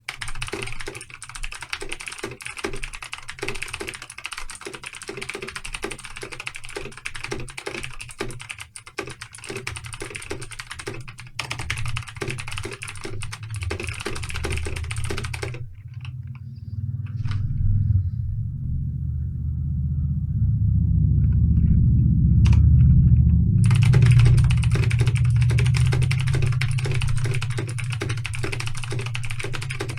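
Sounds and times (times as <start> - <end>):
rapid typing on keyboard: 0.0 - 16.4, 22.5 - 29.9
low rumble: 13.0 - 29.9.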